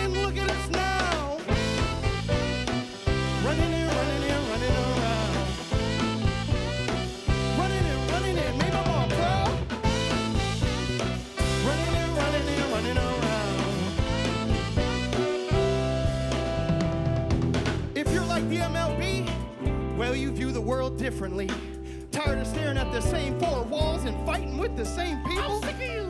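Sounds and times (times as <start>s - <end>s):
person singing: 0.0s - 16.7s, 18.0s - 21.6s
band playing a song: 0.0s - 26.0s.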